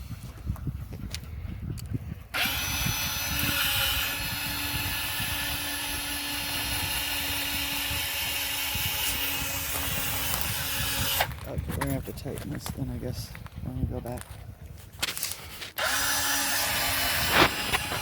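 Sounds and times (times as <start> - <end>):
gate opener motor whining: 2.4 - 11.3, 15.8 - 18.0.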